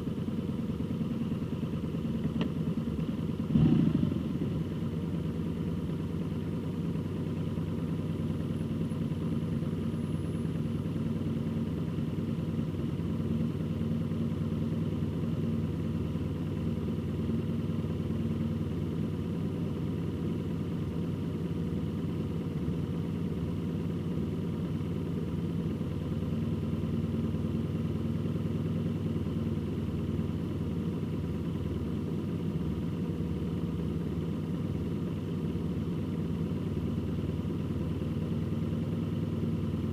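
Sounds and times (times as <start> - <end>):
vehicle engine drone: 0.0 - 39.9
higher engine tone: 3.0 - 5.9
road noise: 3.5 - 5.4.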